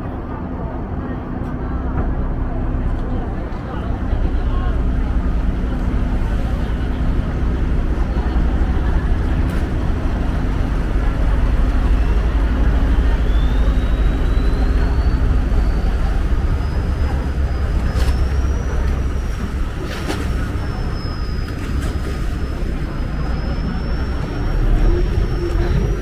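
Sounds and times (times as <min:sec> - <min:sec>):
boat engine low rumble: 0:00.0 - 0:26.0.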